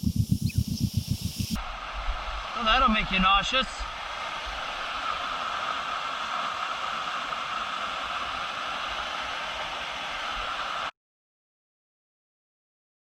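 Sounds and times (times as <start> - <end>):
waterfall rushing: 1.1 - 10.9.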